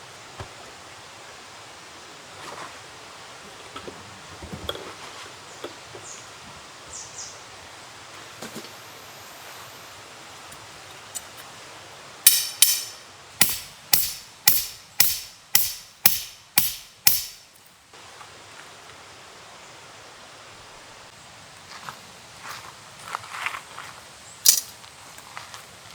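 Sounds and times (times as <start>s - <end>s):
hammer blows ringing: 12.3s - 17.6s.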